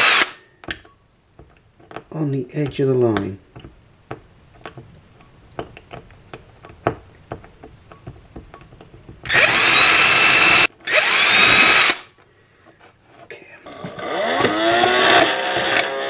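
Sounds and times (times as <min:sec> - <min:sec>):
power drill whining: 0:00.0 - 0:00.5, 0:09.2 - 0:12.2, 0:13.6 - 0:16.0.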